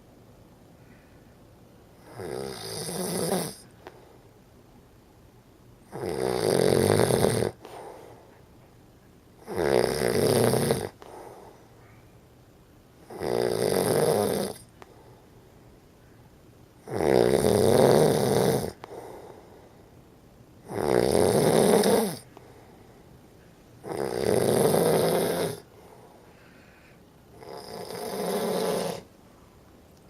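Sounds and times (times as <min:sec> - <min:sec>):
quiet breaths: 0:00.0 - 0:06.4, 0:07.1 - 0:16.9, 0:17.7 - 0:30.0
loud buzzy snoring: 0:02.0 - 0:03.7, 0:05.8 - 0:07.9, 0:09.4 - 0:11.5, 0:13.0 - 0:14.7, 0:16.8 - 0:19.3, 0:20.6 - 0:22.3, 0:23.8 - 0:25.7, 0:27.3 - 0:29.1.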